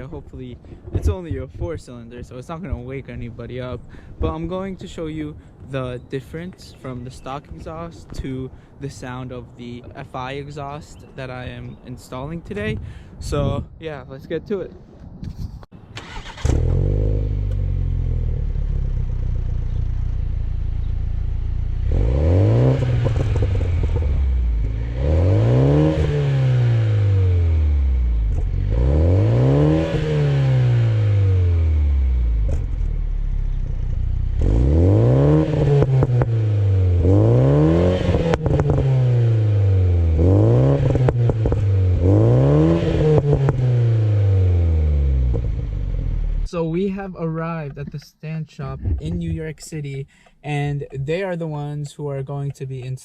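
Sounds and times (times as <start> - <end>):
car engine starting: 15.8 - 53.0
car engine revving: 16.0 - 46.5.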